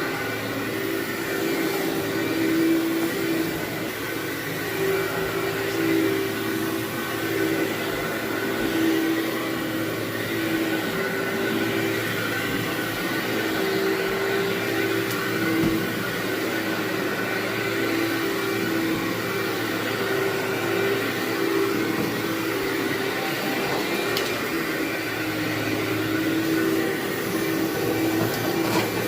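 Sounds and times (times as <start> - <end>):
vacuum cleaner running on carpet: 0.0 - 29.0.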